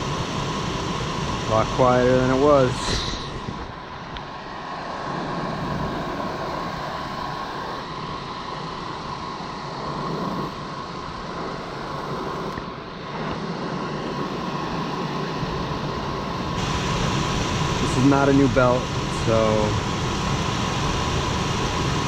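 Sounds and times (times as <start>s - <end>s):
hvac blower humming: 0.0s - 4.2s, 14.0s - 22.0s.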